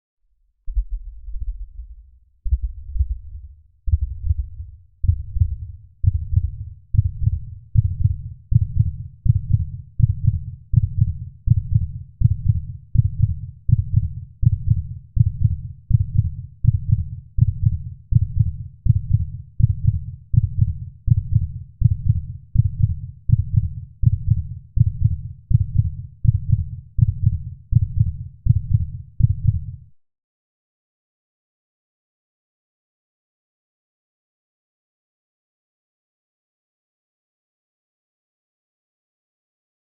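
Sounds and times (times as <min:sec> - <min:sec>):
heartbeat thumps: 0:00.7 - 0:29.7.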